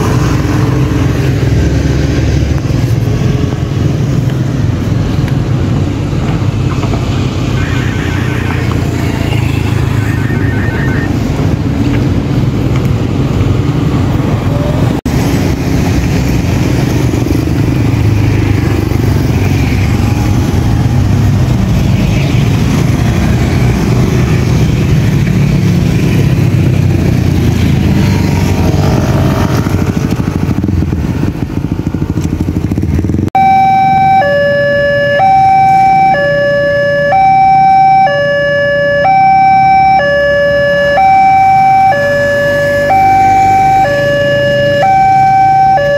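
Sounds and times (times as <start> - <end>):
road traffic: 0.0 - 45.9
two-tone crossing warning siren: 7.3 - 11.8, 33.4 - 45.9.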